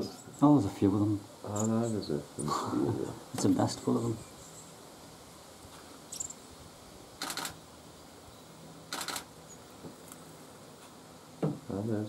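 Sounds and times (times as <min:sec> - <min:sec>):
low steady background noise: 0:00.0 - 0:12.0
bursts of clicking: 0:07.2 - 0:07.6, 0:08.9 - 0:09.3.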